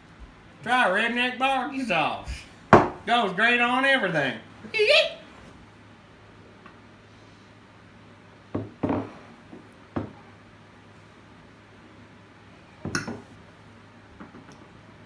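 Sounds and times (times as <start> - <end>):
short knocks and thumps: 2.3 - 3.1.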